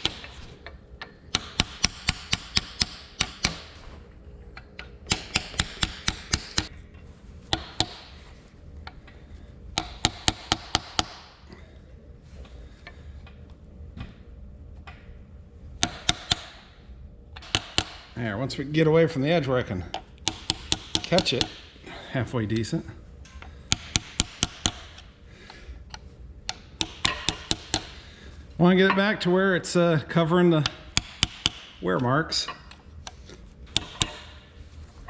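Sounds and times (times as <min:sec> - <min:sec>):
hammer tapping on metal: 0:01.0 - 0:03.8, 0:04.6 - 0:06.7, 0:07.5 - 0:08.2, 0:09.8 - 0:11.4, 0:15.8 - 0:16.7, 0:17.4 - 0:18.2, 0:19.9 - 0:21.8, 0:23.7 - 0:28.0, 0:30.6 - 0:31.8, 0:32.4 - 0:34.4.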